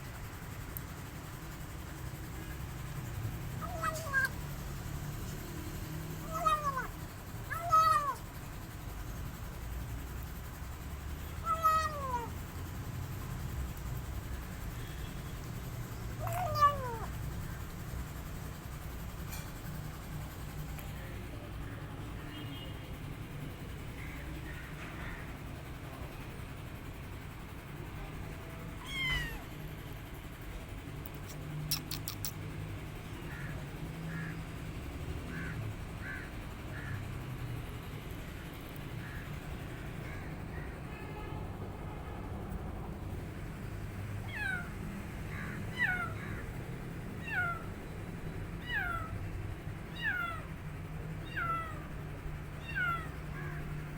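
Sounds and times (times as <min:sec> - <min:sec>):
kitten meowing: 0:03.6 - 0:04.4, 0:06.2 - 0:08.4, 0:11.4 - 0:12.4, 0:16.2 - 0:17.2, 0:28.8 - 0:29.5, 0:44.2 - 0:44.8, 0:45.4 - 0:46.2, 0:47.1 - 0:47.8, 0:48.6 - 0:49.2, 0:49.9 - 0:50.5, 0:51.2 - 0:53.6.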